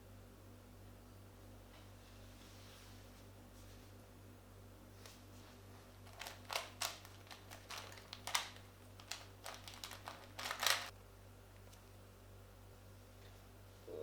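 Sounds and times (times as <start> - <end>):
puzzle cube clicking and clacking: 6.0 - 10.9.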